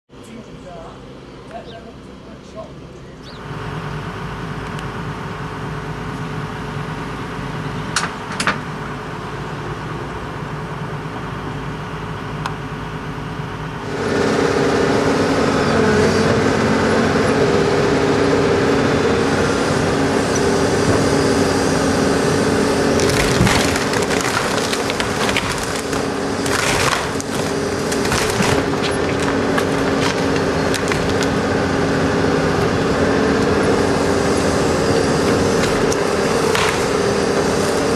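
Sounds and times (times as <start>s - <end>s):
heavy machine engine running: 0.1s - 37.9s
structure cracking and crunching: 19.8s - 37.9s.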